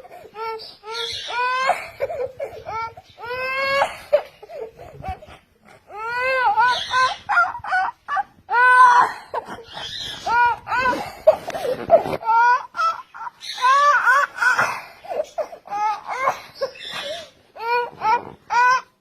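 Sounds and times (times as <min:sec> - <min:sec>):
child crying and wailing: 0:00.0 - 0:05.2, 0:05.8 - 0:19.0.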